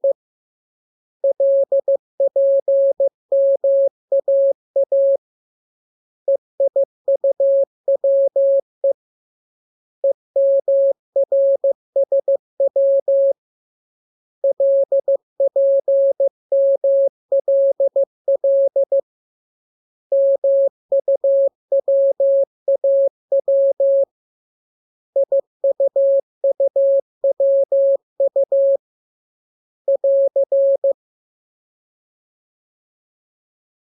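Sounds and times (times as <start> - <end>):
morse code beeps: 29.9 - 31.0.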